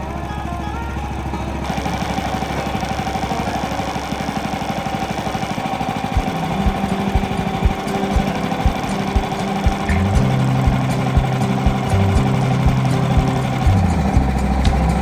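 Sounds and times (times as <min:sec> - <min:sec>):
small petrol engine running: 0:00.0 - 0:15.0
low thumps: 0:06.2 - 0:15.0.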